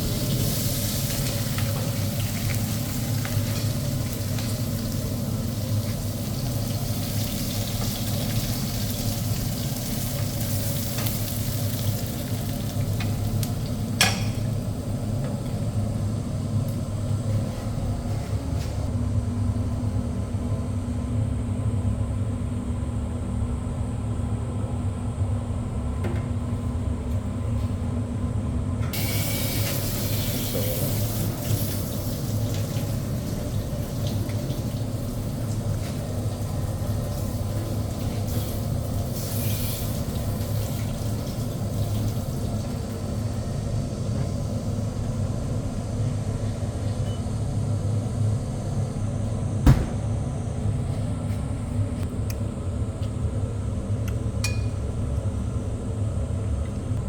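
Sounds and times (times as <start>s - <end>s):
stir-fry machine humming: 0.0s - 57.0s
loud hiss: 29.0s - 31.7s.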